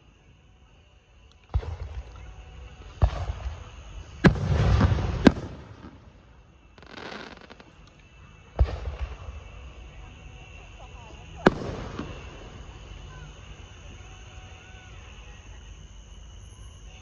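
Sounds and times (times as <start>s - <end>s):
fireworks crackle: 1.3s - 15.4s
fireworks bangs: 1.4s - 14.6s.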